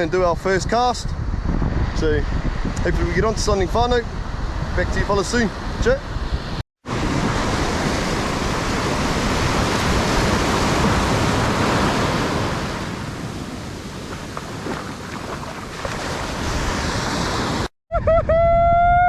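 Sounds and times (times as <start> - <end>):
wind buffeting microphone: 0.0 - 17.7
surf washing onto beach: 6.4 - 17.7.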